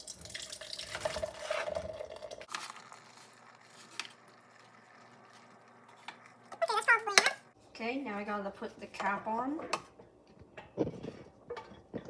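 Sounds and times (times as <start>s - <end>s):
drink pouring into a mug: 0.0s - 6.5s.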